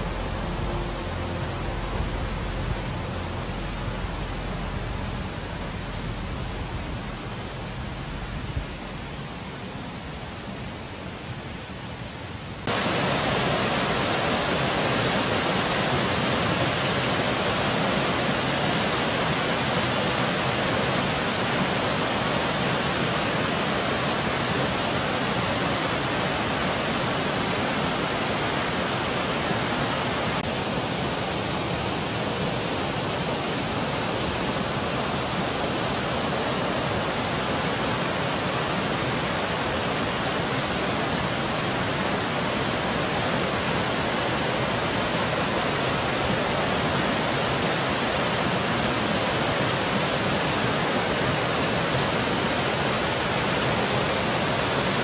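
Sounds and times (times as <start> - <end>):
steady rushing noise: 0.0 - 20.5.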